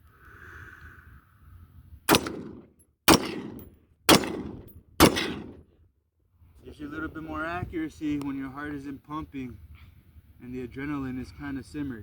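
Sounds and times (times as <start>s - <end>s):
rifle shots with echo: 2.1s - 5.6s.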